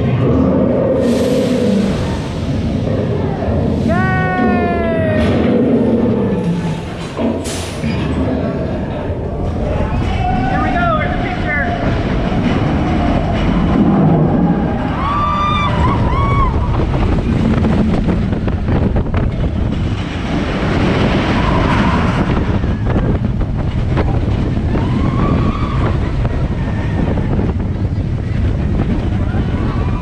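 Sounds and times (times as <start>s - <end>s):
wind rushing over microphone: 0.0s - 30.0s
riders crying out: 3.8s - 5.8s.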